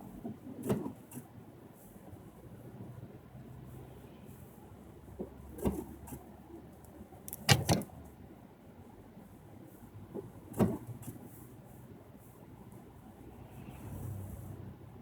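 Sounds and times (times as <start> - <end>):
sharp knocks: 7.4 - 7.8.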